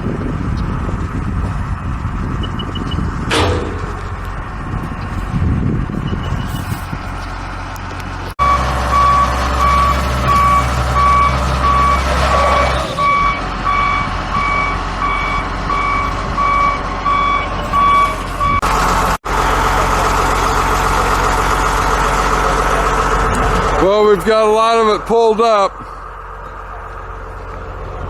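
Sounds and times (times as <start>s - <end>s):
vehicle engine running: 0.0s - 28.0s
reversing alarm beeping: 2.4s - 3.1s, 6.0s - 6.8s, 8.4s - 18.6s.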